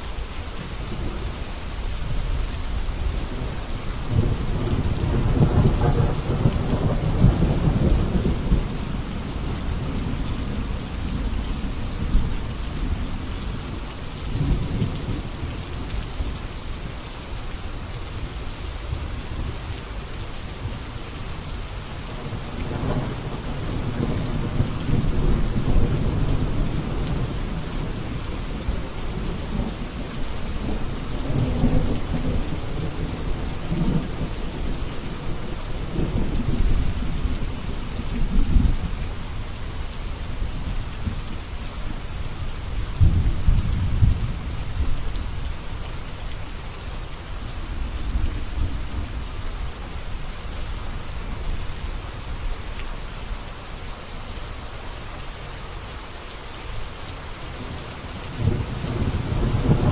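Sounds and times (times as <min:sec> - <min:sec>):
heavy rain: 0:00.0 - 0:59.9
thunder rumbling: 0:03.0 - 0:13.1, 0:22.1 - 0:39.2, 0:42.9 - 0:45.5, 0:57.5 - 0:59.9.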